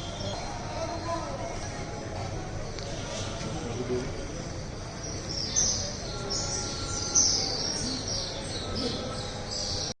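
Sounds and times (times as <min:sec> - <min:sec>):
birds chirping: 0:00.0 - 0:01.6, 0:04.3 - 0:10.0.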